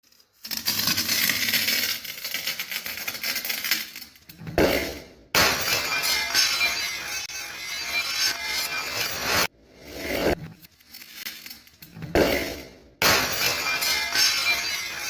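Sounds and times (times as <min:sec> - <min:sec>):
glass bottles being crushed: 0:00.4 - 0:07.2, 0:11.0 - 0:15.0.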